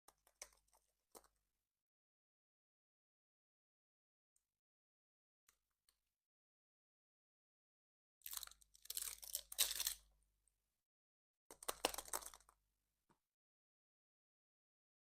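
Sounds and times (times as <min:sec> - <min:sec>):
packaging crinkling and crunching: 0:08.3 - 0:10.0.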